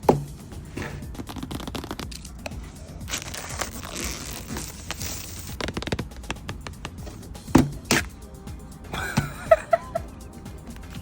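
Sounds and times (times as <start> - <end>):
background music: 0.0 - 11.0
packaging crinkling and tearing: 1.2 - 2.4, 3.0 - 6.4.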